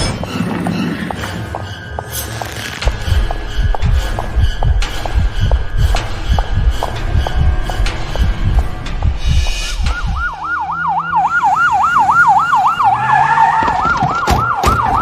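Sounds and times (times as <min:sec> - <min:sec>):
low rhythmic thumping: 0:02.8 - 0:10.4
police siren wailing: 0:09.7 - 0:15.0.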